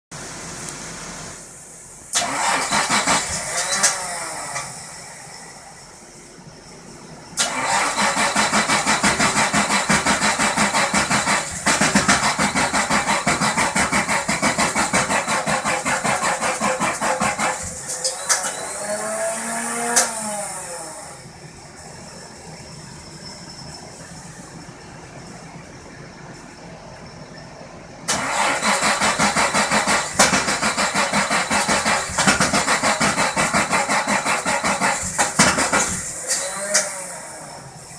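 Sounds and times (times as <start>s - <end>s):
starter motor cranking: 2.1s - 4.8s, 7.4s - 21.3s, 28.1s - 37.6s.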